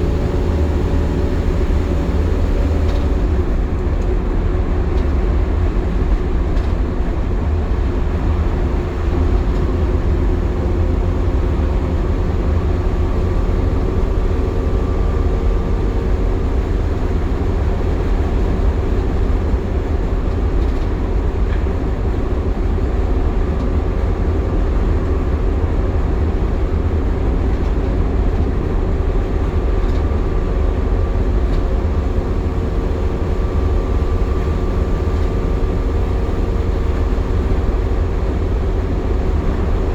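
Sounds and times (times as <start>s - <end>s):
steady whine: 0.0s - 3.6s
bus engine and road rumble: 0.0s - 39.9s.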